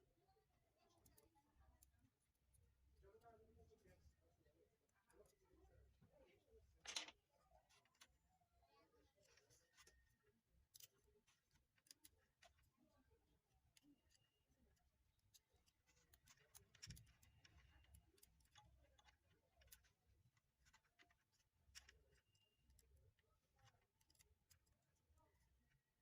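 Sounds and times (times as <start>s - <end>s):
small parts clicking: 6.8s - 8.2s, 9.2s - 26.0s.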